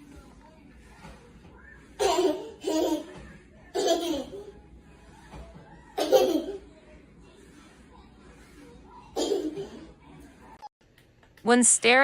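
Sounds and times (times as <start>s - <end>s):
baby laughing: 2.0s - 4.6s, 5.9s - 6.7s, 9.0s - 10.0s.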